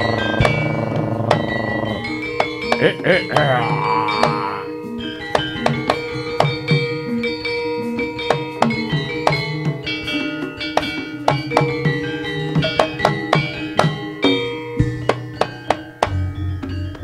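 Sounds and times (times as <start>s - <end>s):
held tone: 0.0s - 5.0s
drum and percussion strikes: 0.0s - 17.0s
ringing metallophone notes: 0.0s - 17.0s.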